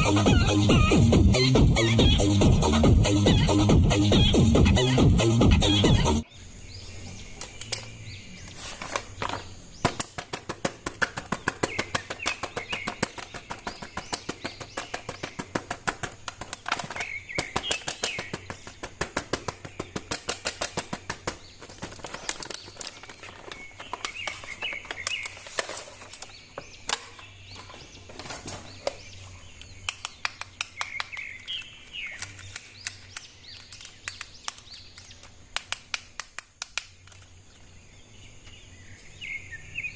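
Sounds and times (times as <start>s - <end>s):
birds chirping: 0.0s - 35.7s, 36.9s - 39.9s
plastic toy parts clicking: 29.6s - 37.3s.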